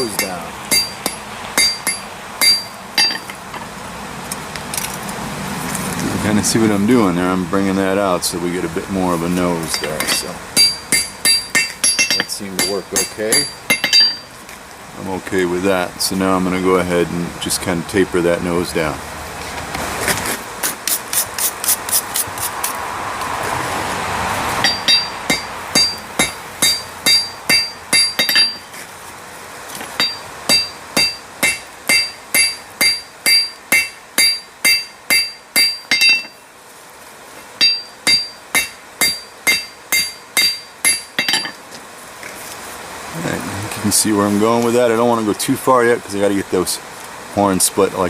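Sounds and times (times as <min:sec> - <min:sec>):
hammer striking hot metal on anvil: 0:00.0 - 0:03.4, 0:09.7 - 0:14.3, 0:24.6 - 0:28.6, 0:30.0 - 0:36.4, 0:37.6 - 0:41.6.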